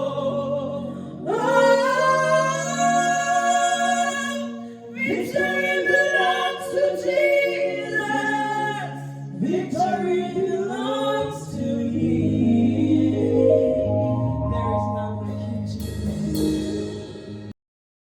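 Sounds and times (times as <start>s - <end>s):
group singing gospel: 0.0s - 17.5s
sustained low note: 13.2s - 15.8s.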